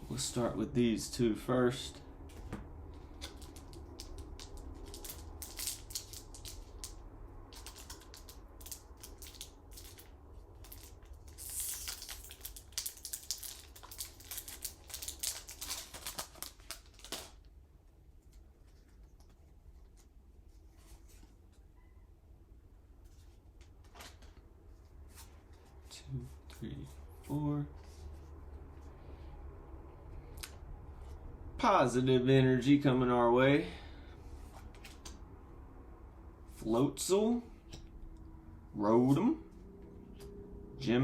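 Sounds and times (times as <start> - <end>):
foil wrappers crinkling: 3.2 - 17.4
foil wrapper tearing: 7.6 - 17.4.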